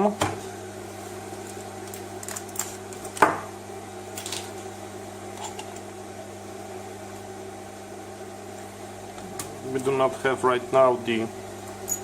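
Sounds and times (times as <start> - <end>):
low mains hum: 0.0 - 12.0.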